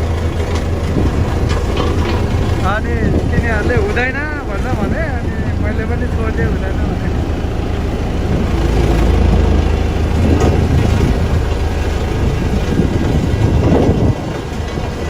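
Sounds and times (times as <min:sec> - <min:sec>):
metal clank: 0:00.0 - 0:04.0
diesel construction machinery rumbling: 0:00.0 - 0:15.0.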